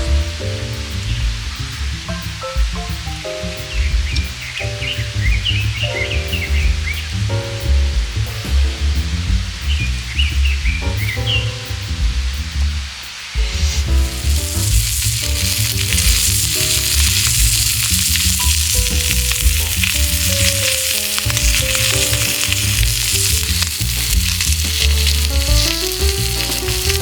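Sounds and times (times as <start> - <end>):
background music with bass beat: 0.0 - 27.0
food sizzling on a griddle: 13.0 - 27.0.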